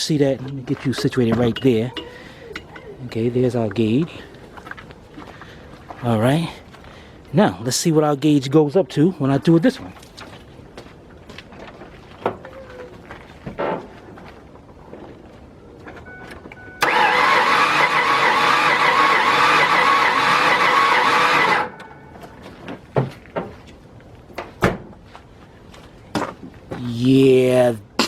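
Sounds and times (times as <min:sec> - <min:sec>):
starter cranking engine: 0:16.8 - 0:21.9.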